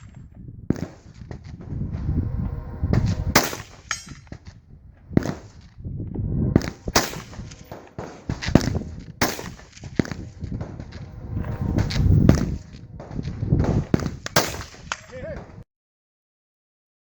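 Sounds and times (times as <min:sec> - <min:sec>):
rifle firing single shots: 0:13.9 - 0:15.1.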